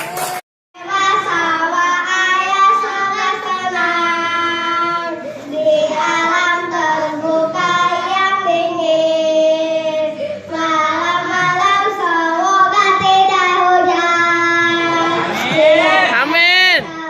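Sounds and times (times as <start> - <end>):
children singing: 0.9 - 16.2.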